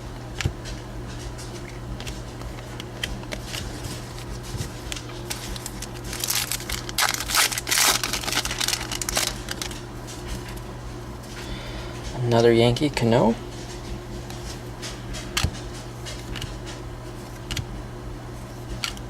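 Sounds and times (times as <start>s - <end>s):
foil wrapper crinkling and tearing: 3.3s - 10.7s.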